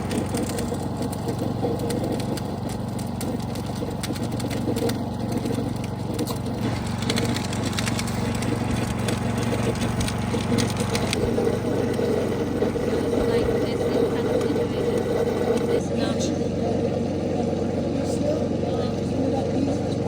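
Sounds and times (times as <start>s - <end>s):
crackling and clicking: 0.0s - 15.8s
engine running: 0.0s - 20.0s.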